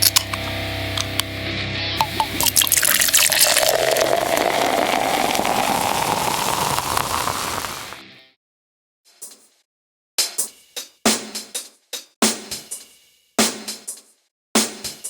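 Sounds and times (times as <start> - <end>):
beer pouring into glass: 2.0 - 8.0.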